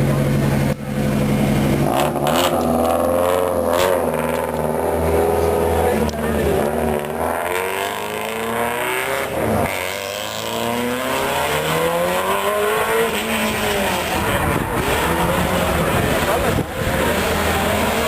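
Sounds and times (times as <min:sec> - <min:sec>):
racing car engine accelerating: 0:00.0 - 0:18.0.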